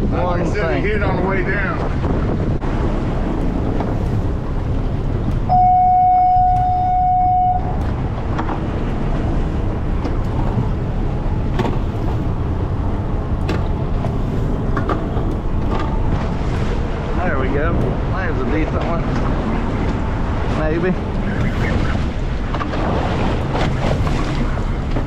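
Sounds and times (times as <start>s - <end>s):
boat noise: 0.0s - 25.0s
wind: 0.0s - 25.0s
loud electronic beep: 5.5s - 7.8s.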